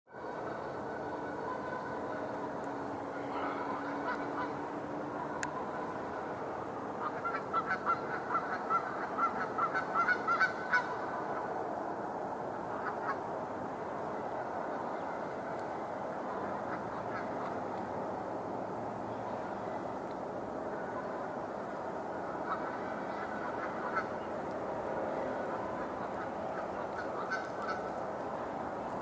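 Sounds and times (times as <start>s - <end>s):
steady background hum: 0.1s - 29.0s.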